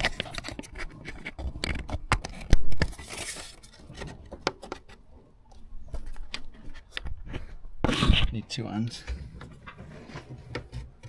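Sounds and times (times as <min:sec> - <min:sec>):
rustling scrape: 0:09.0 - 0:11.0.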